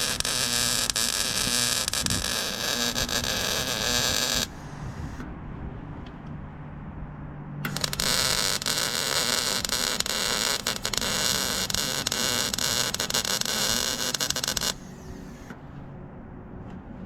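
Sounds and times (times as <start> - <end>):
arc welding crackling hiss: 0.0 - 5.2, 7.7 - 15.5.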